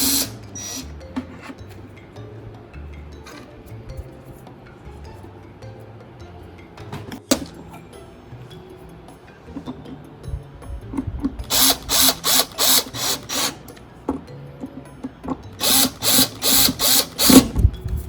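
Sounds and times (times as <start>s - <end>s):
screwdriver driving screws: 0.0s - 0.8s, 11.4s - 13.6s, 15.6s - 17.5s.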